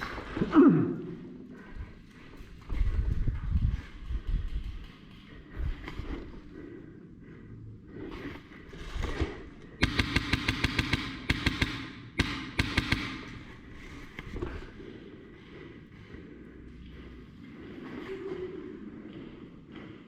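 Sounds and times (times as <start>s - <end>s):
airsoft gun firing bursts: 9.8s - 13.5s.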